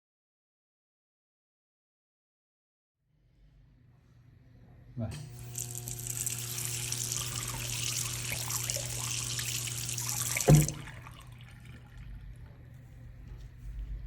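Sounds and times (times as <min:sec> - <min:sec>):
tap water running into sink: 0:05.2 - 0:12.8
short knock: 0:10.4 - 0:10.9.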